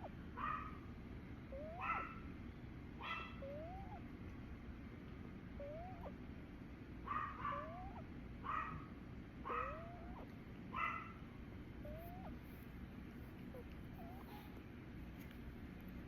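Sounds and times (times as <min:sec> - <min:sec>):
pet snorting: 0:13.6 - 0:14.5.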